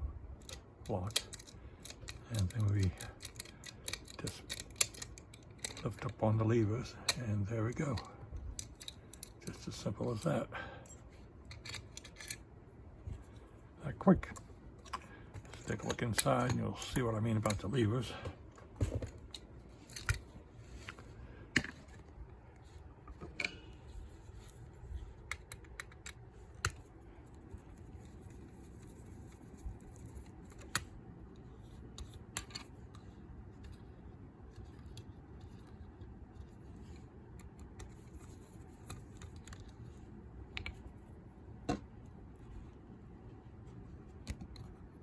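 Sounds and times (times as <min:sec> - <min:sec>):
faint steady hum: 0:00.0 - 0:45.0
tools clicking and scraping on metal: 0:00.3 - 0:12.6, 0:14.1 - 0:22.0, 0:23.0 - 0:30.9.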